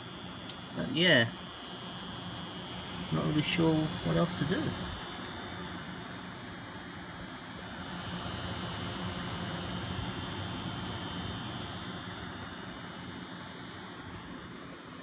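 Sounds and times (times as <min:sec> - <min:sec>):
computer fans whirring with buzz: 0:00.0 - 0:15.0.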